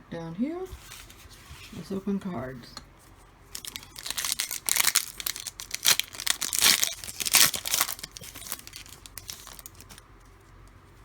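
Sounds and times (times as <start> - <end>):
foil pack tearing and crinkling: 3.6 - 10.0.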